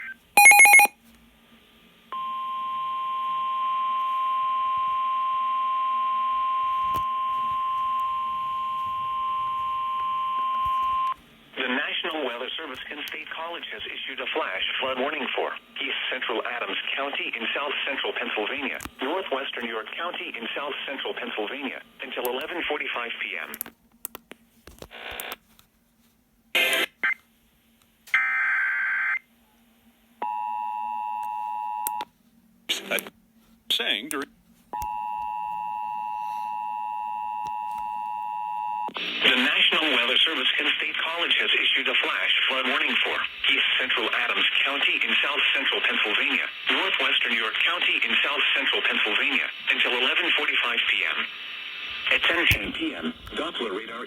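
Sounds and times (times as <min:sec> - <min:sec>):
two-tone alert signal: 0:00.4 - 0:00.9.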